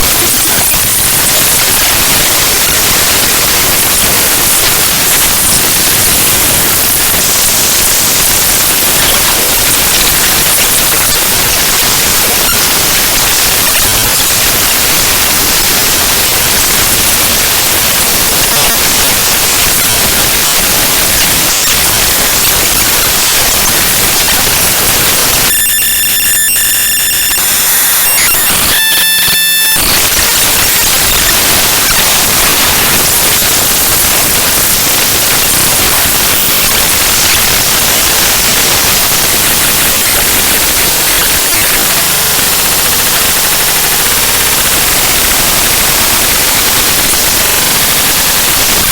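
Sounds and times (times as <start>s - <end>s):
harsh static noise: 0.0s - 48.9s
buzz of high tones: 17.8s - 42.1s.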